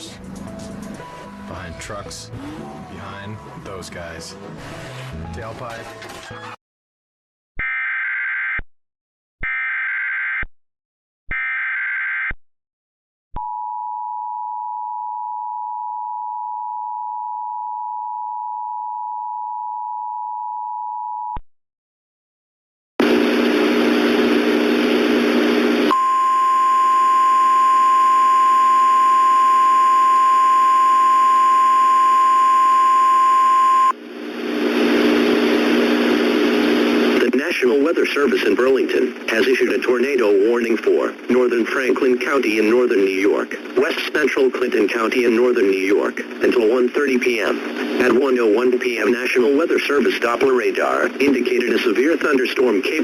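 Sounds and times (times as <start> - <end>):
loud radio static: 23.0 - 53.0
two-tone attention signal: 25.9 - 34.0.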